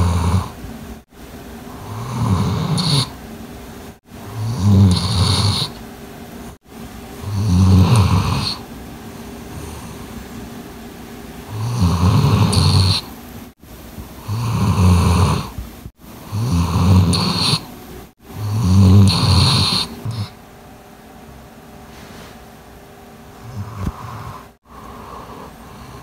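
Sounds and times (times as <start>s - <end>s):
dog snoring heavily: 0.0s - 0.6s, 1.7s - 3.2s, 4.2s - 5.8s, 7.2s - 8.7s, 9.5s - 10.2s, 11.5s - 13.1s, 14.2s - 15.6s, 16.2s - 17.7s, 18.3s - 20.4s, 23.4s - 26.0s.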